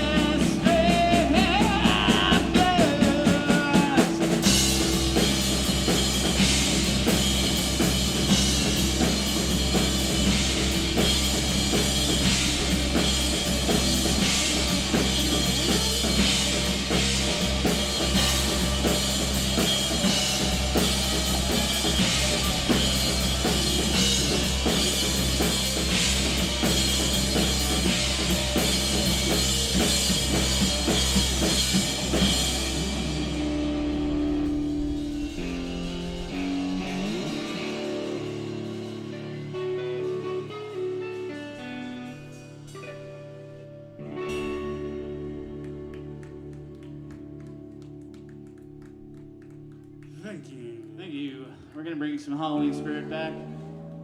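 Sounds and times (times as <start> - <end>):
drum kit beat: 0.0 - 43.0
electric guitar: 0.0 - 51.8, 52.4 - 54.0
bass guitar: 0.0 - 54.0.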